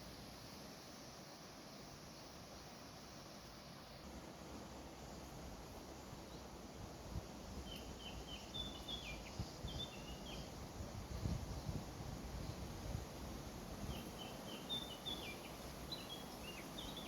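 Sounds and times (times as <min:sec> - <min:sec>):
wind buffeting microphone: 0:10.6 - 0:14.0.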